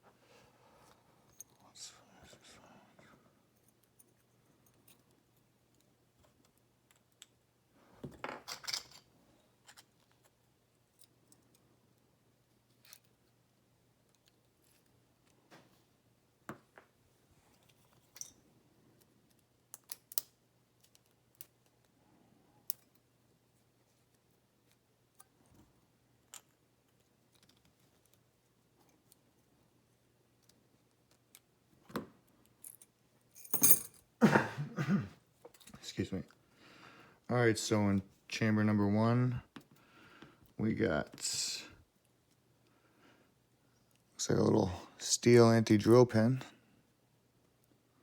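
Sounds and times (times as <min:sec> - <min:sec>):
metal padlock parts rattling scrape: 0:08.4 - 0:10.0.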